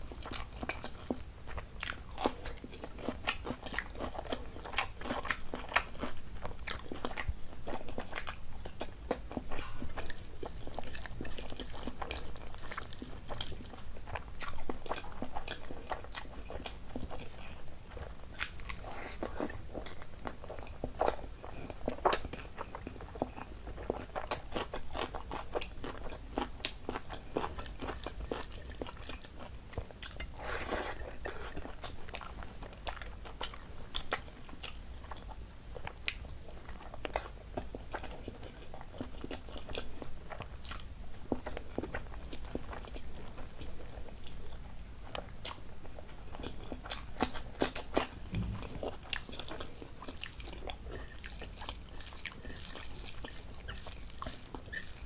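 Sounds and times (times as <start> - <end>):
person chewing crunchy food: 0.0 - 55.0
wet mouth sounds: 48.0 - 49.6.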